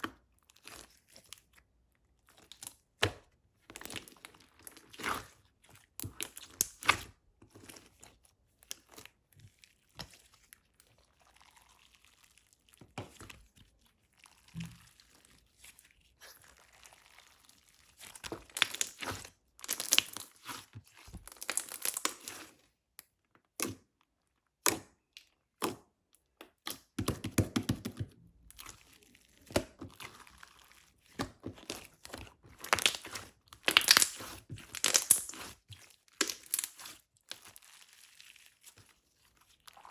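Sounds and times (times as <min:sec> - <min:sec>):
slime clicking and popping: 0:32.6 - 0:35.5.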